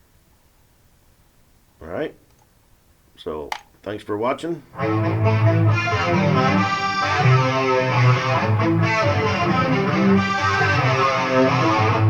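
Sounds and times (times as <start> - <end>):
guitar music: 4.7 - 12.0.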